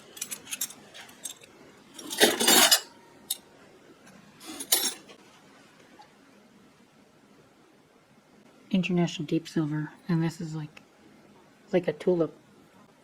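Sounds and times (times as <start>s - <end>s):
metal flatware clinking: 0.0s - 3.4s, 4.4s - 5.2s.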